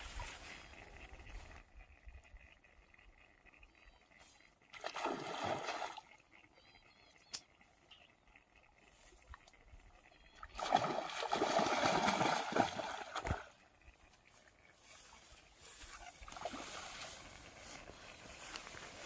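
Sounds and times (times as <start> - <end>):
water splashing: 4.6 - 6.3, 10.4 - 15.0, 15.8 - 18.2.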